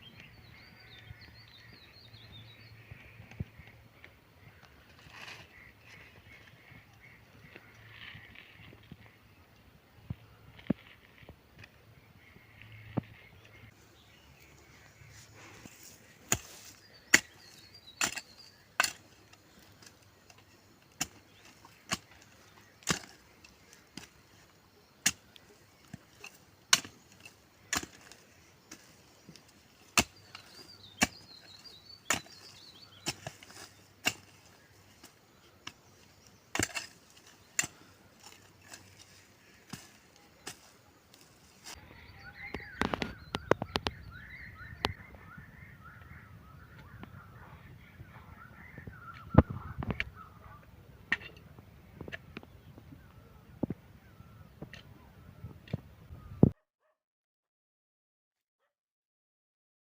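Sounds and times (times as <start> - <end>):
faint bird chirps: 41.6 - 50.8.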